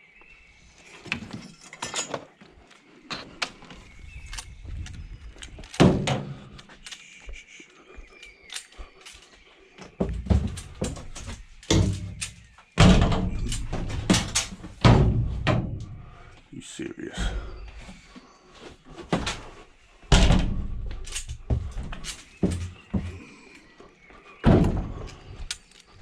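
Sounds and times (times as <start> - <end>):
heavy thuds: 10.0 - 16.2.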